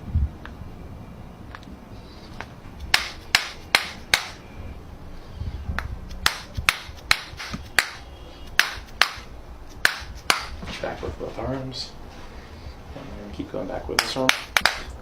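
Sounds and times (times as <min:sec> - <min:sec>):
sharp short knocks: 0:02.8 - 0:04.4, 0:05.8 - 0:10.7.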